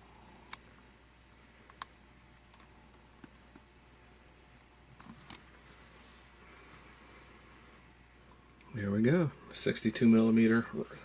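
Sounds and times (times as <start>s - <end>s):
faint clicks and taps: 1.6s - 3.7s.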